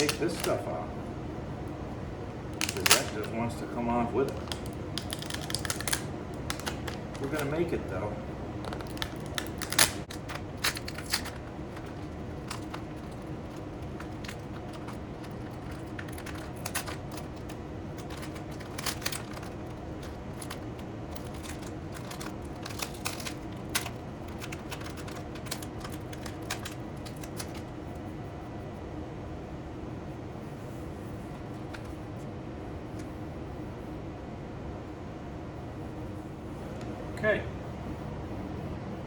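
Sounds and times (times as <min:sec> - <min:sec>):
steady low hum: 0:00.0 - 0:39.0
masking tape crackling and tearing: 0:02.6 - 0:03.4, 0:04.2 - 0:07.6, 0:08.6 - 0:23.7.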